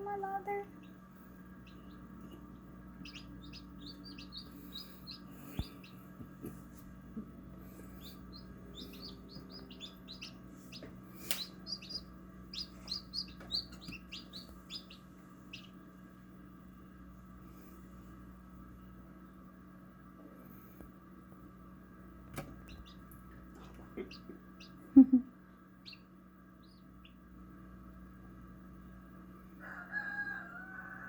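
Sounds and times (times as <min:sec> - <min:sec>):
steady low hum: 0:00.0 - 0:31.0
chicks peeping: 0:00.5 - 0:06.8, 0:07.8 - 0:15.9, 0:22.4 - 0:25.2, 0:25.8 - 0:27.3.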